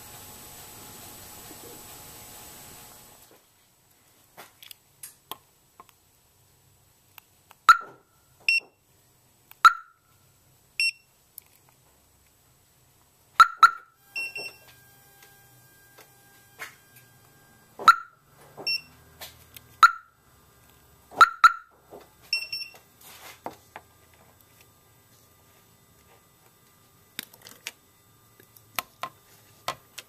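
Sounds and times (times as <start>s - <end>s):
car alarm chirps: 7.7s - 8.8s, 9.6s - 10.2s, 13.4s - 14.8s, 15.5s - 19.0s, 19.8s - 20.2s, 21.2s - 22.8s.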